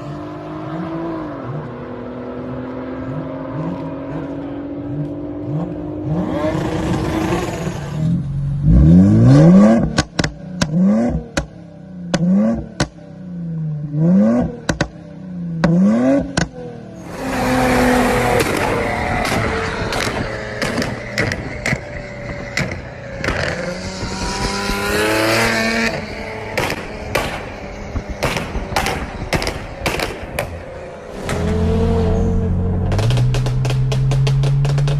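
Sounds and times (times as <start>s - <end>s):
car engine revving: 0.0s - 34.9s
exhaust pops and cracks: 32.9s - 34.9s.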